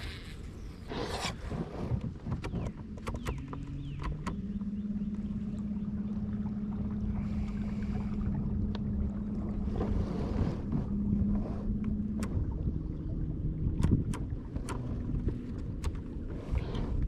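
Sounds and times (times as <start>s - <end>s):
water noise: 0.0s - 17.0s
electric trolling motor humming: 2.1s - 17.0s
wind noise: 9.0s - 17.0s.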